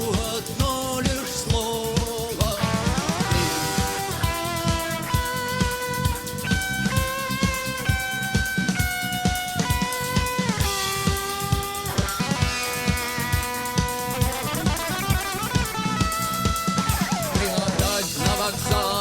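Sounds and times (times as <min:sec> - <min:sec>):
bass: 0:00.0 - 0:19.0
electric guitar lead melody: 0:00.0 - 0:19.0
rock drum kit: 0:00.0 - 0:19.0.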